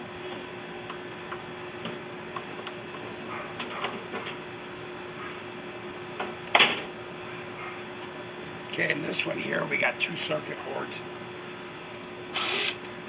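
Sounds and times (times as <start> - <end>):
faint hum: 7.2 - 13.0.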